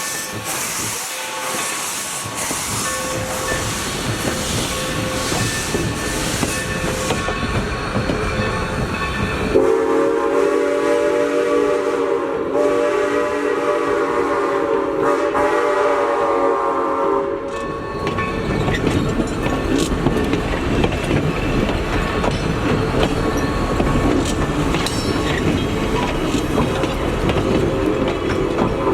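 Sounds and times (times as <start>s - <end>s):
train rumbling on rails: 0.0s - 28.9s
locomotive horn blast: 9.5s - 17.6s.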